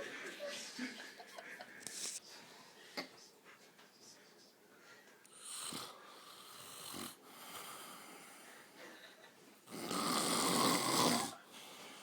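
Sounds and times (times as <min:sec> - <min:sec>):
person snoring: 0:05.3 - 0:08.5, 0:09.7 - 0:12.0.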